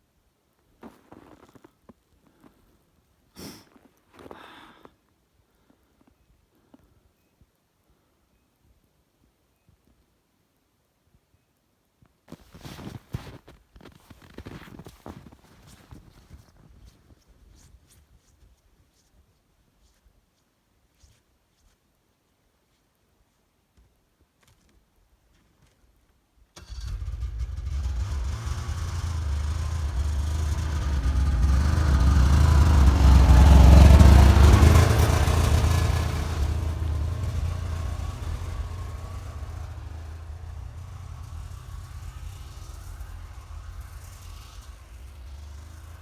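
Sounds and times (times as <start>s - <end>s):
snowmobile engine passing by: 26.6s - 46.0s.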